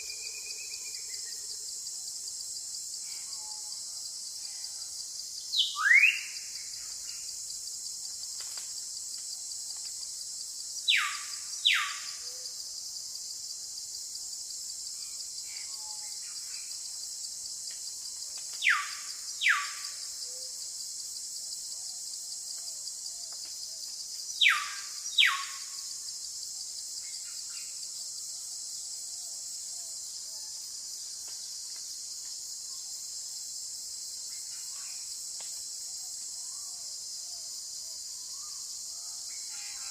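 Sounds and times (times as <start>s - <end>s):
insects chorus: 0.0s - 39.9s.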